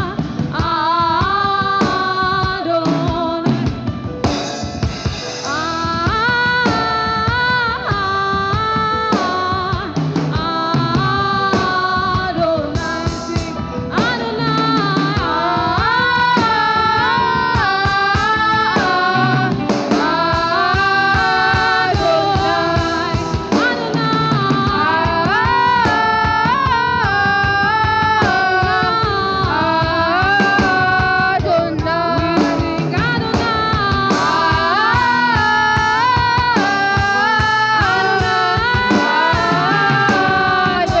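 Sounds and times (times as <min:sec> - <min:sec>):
drums playing a steady beat: 0:00.0 - 0:41.0
people singing: 0:10.4 - 0:41.0
guitar playing: 0:12.8 - 0:41.0.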